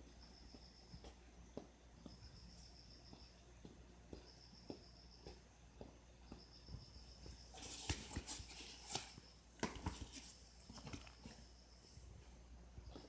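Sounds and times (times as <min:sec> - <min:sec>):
boots clicking with footsteps: 0:00.1 - 0:08.4.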